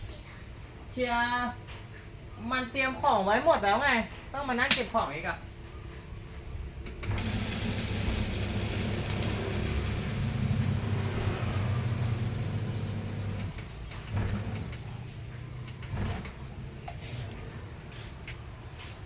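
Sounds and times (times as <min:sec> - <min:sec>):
low motor rumble: 0:07.0 - 0:17.8.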